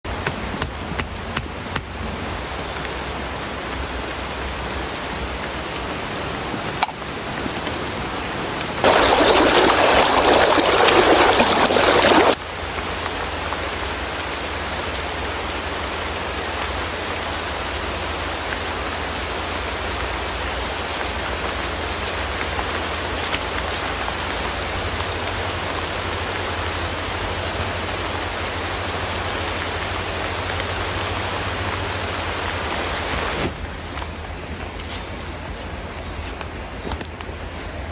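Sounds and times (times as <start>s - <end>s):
heavy rain falling: 0.1s - 33.9s.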